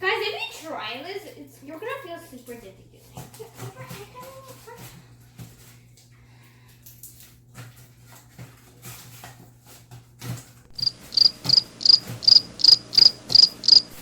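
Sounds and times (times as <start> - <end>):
steady low hum: 10.7 - 14.0
timer alarm beeping: 10.8 - 13.9.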